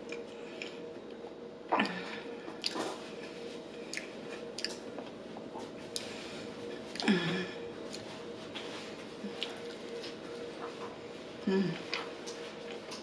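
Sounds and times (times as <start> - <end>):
chewing with wet mouth smacks: 2.6 - 2.9, 3.8 - 6.1.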